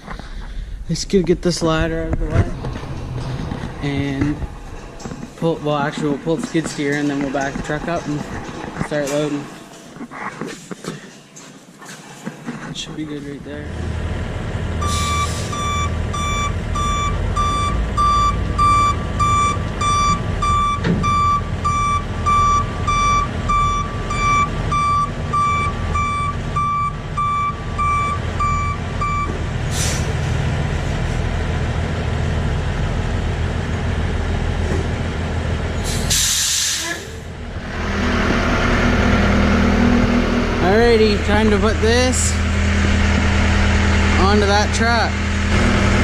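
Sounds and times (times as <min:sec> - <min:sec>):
diesel engine running: 0:00.5 - 0:09.6, 0:13.1 - 0:46.0
truck backup alarm beeping: 0:14.7 - 0:30.0
air brakes hissing: 0:14.8 - 0:15.6, 0:29.7 - 0:30.2, 0:35.8 - 0:37.2.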